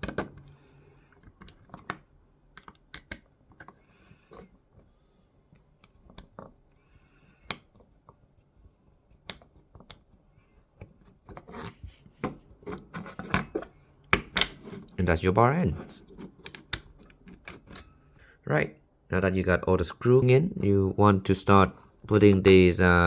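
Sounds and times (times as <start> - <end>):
plastic parts clicking and tapping: 0.0 - 4.9, 5.5 - 6.6, 9.2 - 10.2, 16.2 - 17.8.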